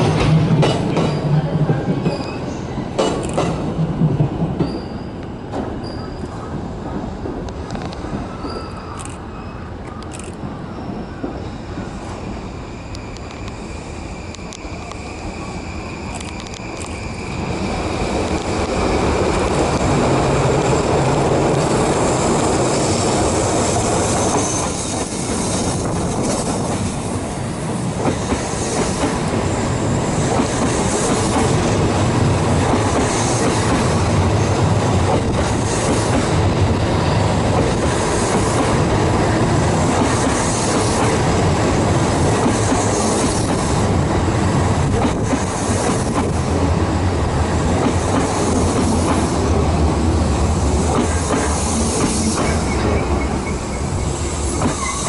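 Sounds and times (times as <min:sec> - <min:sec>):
train wheels running on rails: 0:00.0 - 0:55.0
high wheel squeal: 0:08.2 - 0:09.8, 0:10.6 - 0:19.2, 0:52.2 - 0:55.0.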